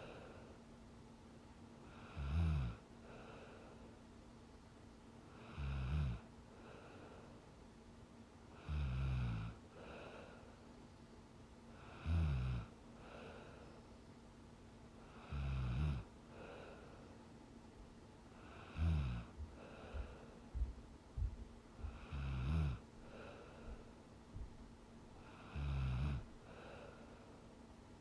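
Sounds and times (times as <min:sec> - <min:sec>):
woman snoring: 0:01.9 - 0:02.8, 0:05.4 - 0:06.2, 0:08.6 - 0:09.6, 0:11.8 - 0:12.7, 0:15.1 - 0:16.1, 0:18.4 - 0:19.4, 0:21.9 - 0:23.4, 0:25.2 - 0:27.0
soft breath out: 0:06.5 - 0:07.5, 0:09.7 - 0:10.8, 0:13.0 - 0:14.1, 0:16.3 - 0:17.3, 0:19.4 - 0:20.7, 0:23.0 - 0:24.0, 0:26.4 - 0:27.6.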